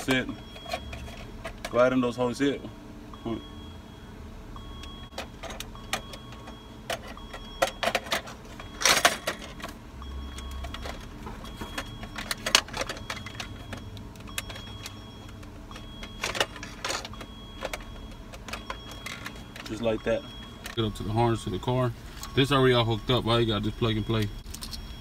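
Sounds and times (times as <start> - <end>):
steady low hum: 0.0 - 25.0
faint high beep: 3.1 - 7.8, 17.2 - 25.0.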